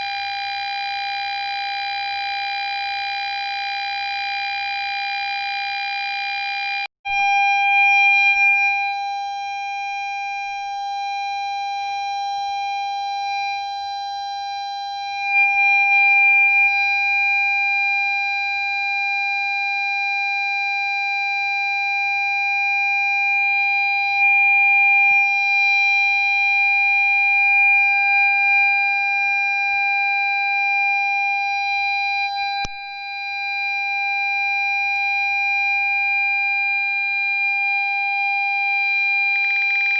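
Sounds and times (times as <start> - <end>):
buzzy electronic tone: 7.1 - 9.0, 15.0 - 17.0.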